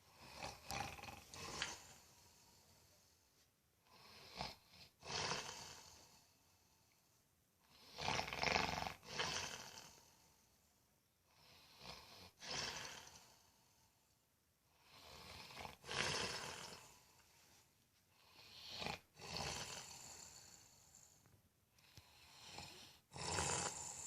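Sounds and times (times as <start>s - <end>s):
man snoring: 0.1s - 2.5s, 3.9s - 6.2s, 7.7s - 10.2s, 11.4s - 13.5s, 14.8s - 17.1s, 18.2s - 21.1s, 21.8s - 24.0s.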